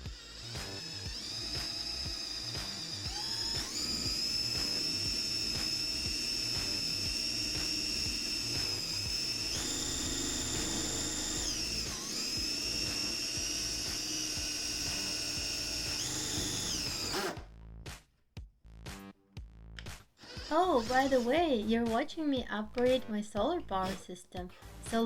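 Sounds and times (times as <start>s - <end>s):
cordless drill motor whining: 0.0s - 17.5s, 20.2s - 22.0s.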